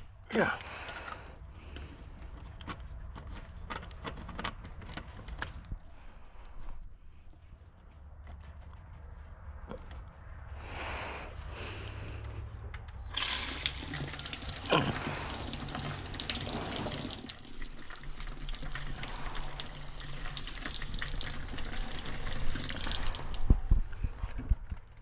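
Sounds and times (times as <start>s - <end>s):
hose water splashing into container: 13.0s - 23.5s.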